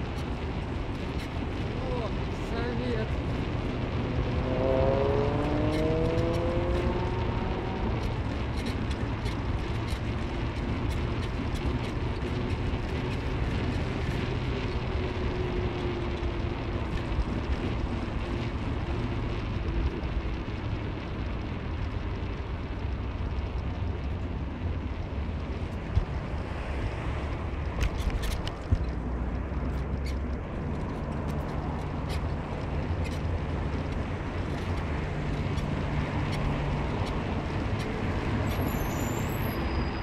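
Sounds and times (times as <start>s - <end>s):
road noise: 0.0s - 40.0s
car engine accelerating: 1.8s - 21.4s.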